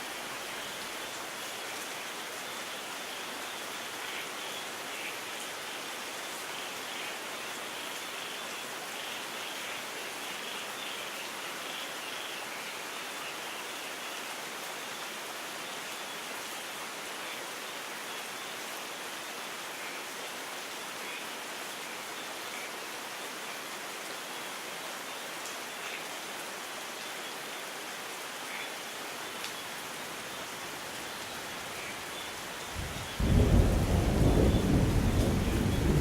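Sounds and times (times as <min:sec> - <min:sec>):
steady rain: 0:00.0 - 0:36.0
thunder rumbling: 0:32.8 - 0:36.0.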